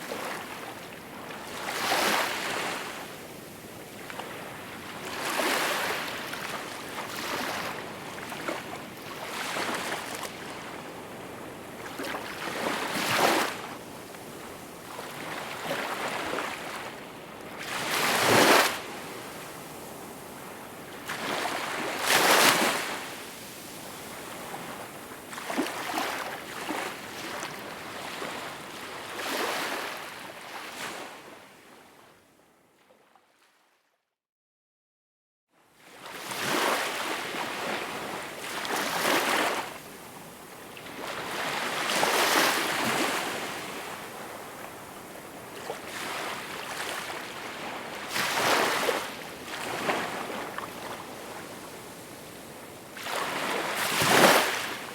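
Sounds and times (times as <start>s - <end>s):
small waves breaking on shore: 35.8s - 54.9s.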